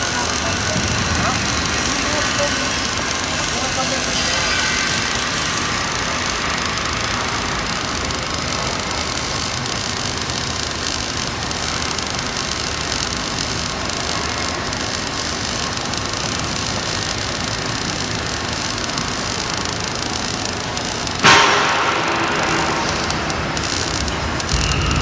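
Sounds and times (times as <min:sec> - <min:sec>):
welding arc crackling hiss: 0:00.0 - 0:25.0.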